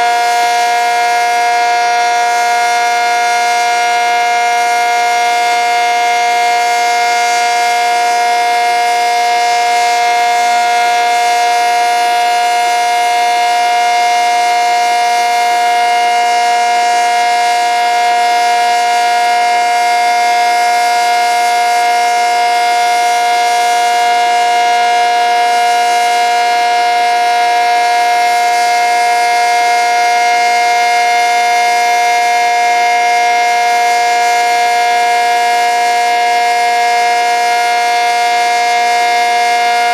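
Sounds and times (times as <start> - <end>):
tornado siren steady tone: 0.0 - 39.9.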